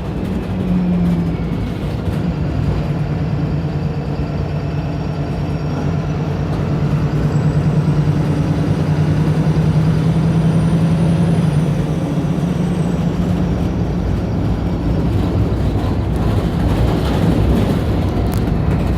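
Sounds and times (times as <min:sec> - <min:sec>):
bus engine accelerating: 0:00.0 - 0:18.9.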